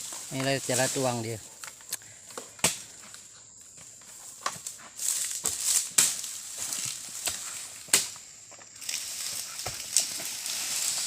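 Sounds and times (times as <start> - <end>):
rustling: 8.6 - 11.0.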